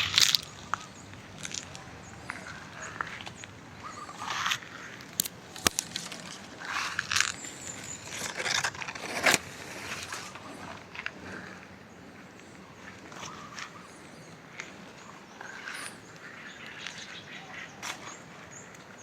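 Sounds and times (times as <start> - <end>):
footsteps on dry leaves: 0.0 - 10.6.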